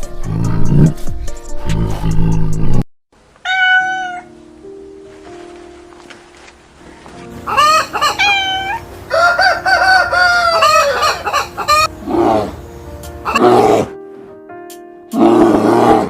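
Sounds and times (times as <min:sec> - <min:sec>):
low clucking calls: 0:07.5 - 0:08.8
rooster crowing: 0:07.5 - 0:11.9.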